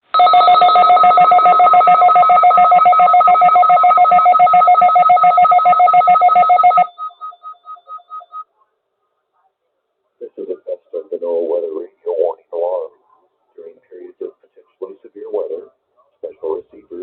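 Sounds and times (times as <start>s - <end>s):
electronic alarm trilling: 0.1s - 8.4s.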